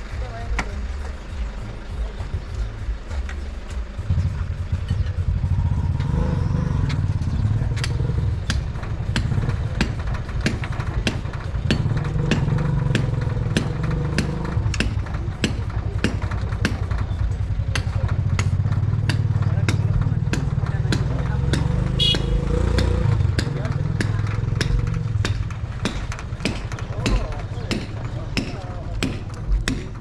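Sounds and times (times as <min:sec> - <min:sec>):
engine rumbling: 0:00.0 - 0:30.0
sharp knocks: 0:06.8 - 0:30.0.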